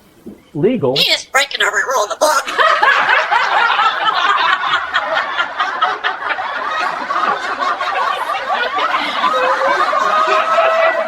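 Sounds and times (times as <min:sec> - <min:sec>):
women laughing: 0:02.2 - 0:11.0.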